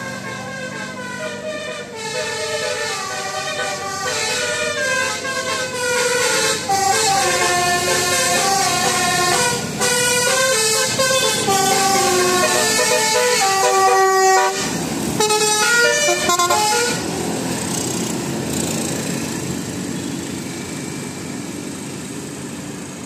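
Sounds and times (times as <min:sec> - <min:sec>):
air horns playing melodic tune: 0:00.0 - 0:17.1
vehicle noise rushing: 0:00.0 - 0:23.0.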